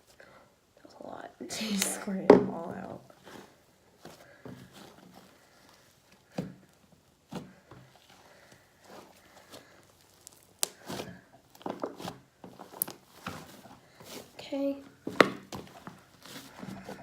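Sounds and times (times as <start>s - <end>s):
slime squelching and popping: 1.7s - 14.2s.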